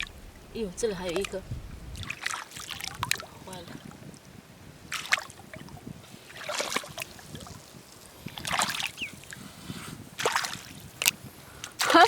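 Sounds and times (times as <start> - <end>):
low steady hiss: 0.0 - 12.0
scuffs and splashes in wet sand: 4.8 - 11.0.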